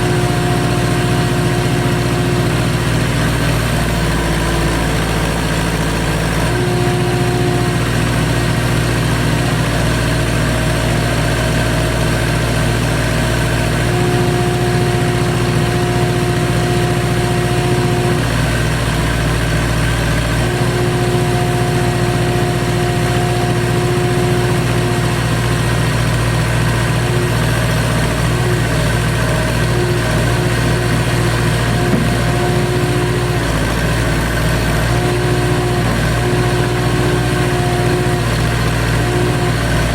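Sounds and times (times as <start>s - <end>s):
backhoe engine running: 0.0s - 39.9s
high whining tone: 29.8s - 38.4s.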